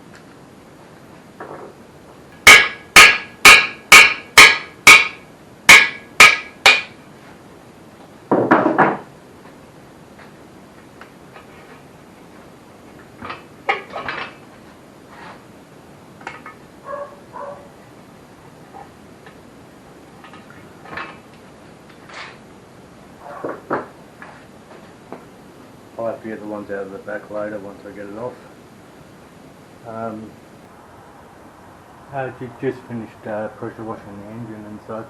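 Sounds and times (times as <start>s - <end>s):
hammer striking metal: 2.4s - 7.0s.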